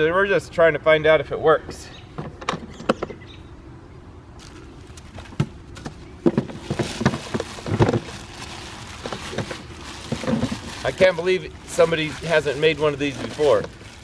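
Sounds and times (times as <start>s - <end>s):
packaging rustling: 6.3s - 14.0s.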